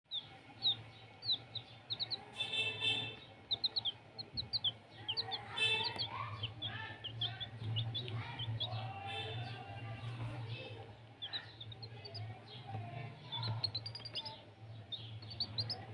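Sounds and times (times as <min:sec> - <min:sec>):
loud long chick calls: 0:00.1 - 0:09.8
chicks peeping: 0:00.1 - 0:15.9.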